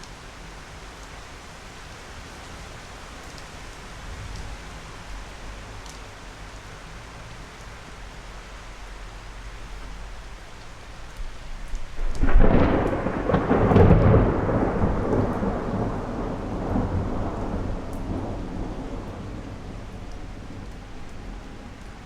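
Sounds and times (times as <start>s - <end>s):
steady rain: 0.0s - 22.0s
thunderclap and rolling rumble: 11.2s - 22.0s.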